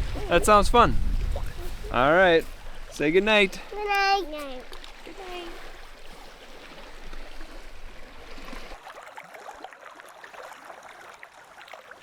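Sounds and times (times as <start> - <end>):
wind rumble on microphone: 0.0 - 2.9
waves lapping at shore: 0.0 - 12.0.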